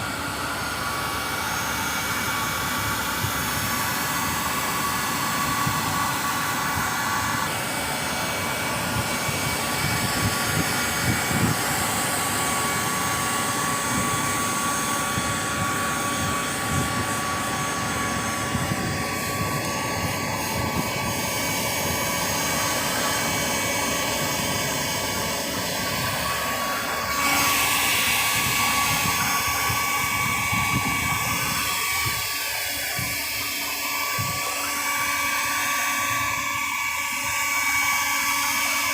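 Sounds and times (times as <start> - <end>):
power tool whining: 0.0 - 38.9.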